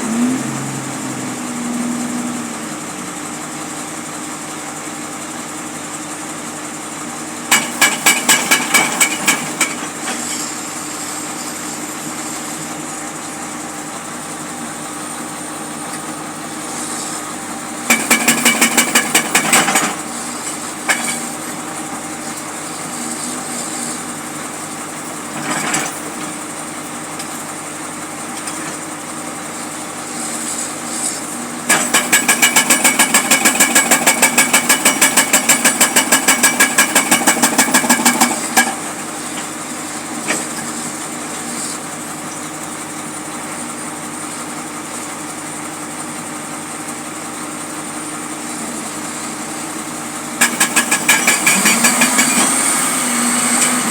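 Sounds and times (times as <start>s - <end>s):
engine running steadily: 0.0s - 53.9s
jackhammer hammering: 7.5s - 10.2s, 17.8s - 21.4s, 31.6s - 39.4s, 50.4s - 53.9s.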